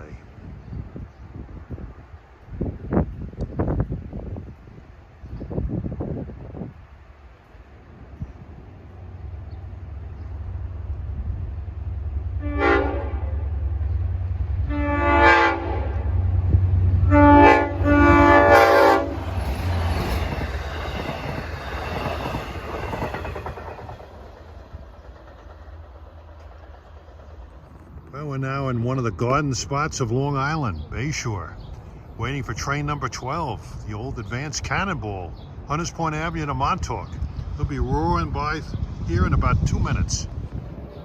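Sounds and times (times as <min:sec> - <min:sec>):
rail noise: 0:00.0 - 0:41.0
train engine rumble: 0:00.0 - 0:41.0
locomotive air horn blasts: 0:12.4 - 0:13.5, 0:14.6 - 0:16.2, 0:17.0 - 0:19.2.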